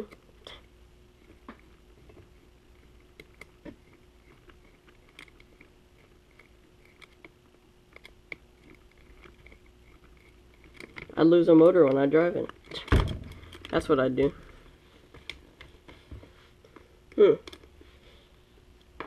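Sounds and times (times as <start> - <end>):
faint steady hum: 0.0 - 19.0
faint clicks of small metal parts: 2.9 - 13.8.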